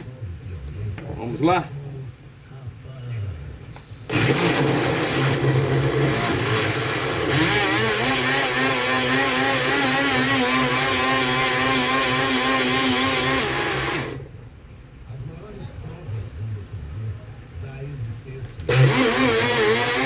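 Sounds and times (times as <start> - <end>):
blender motor running: 4.1 - 14.3, 18.7 - 20.0.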